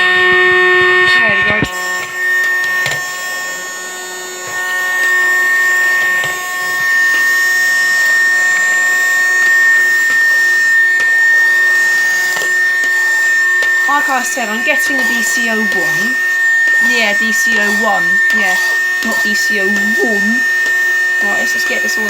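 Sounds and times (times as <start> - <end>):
vacuum cleaner whining: 0.0 - 22.0
nozzle scraping over floor: 7.1 - 22.0.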